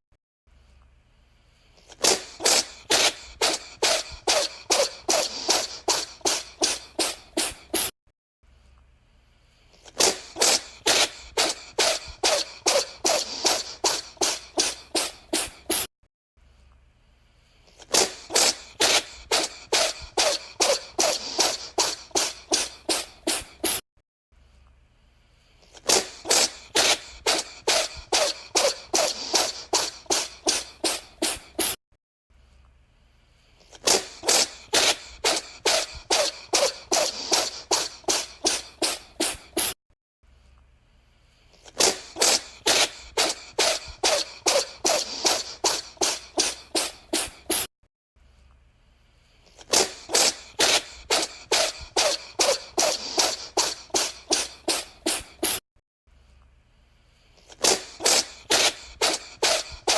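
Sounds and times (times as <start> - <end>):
cat sneezing: 1.8 - 7.9, 9.8 - 15.9, 17.7 - 23.8, 25.6 - 31.8, 33.6 - 39.8, 41.6 - 47.7, 49.5 - 55.6, 57.4 - 59.9.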